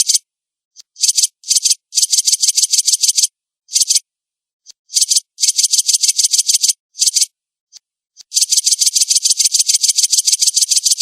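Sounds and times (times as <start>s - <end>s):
bird calling in shrill rattling runs: 1.0s - 4.0s, 4.9s - 7.3s, 8.3s - 11.0s.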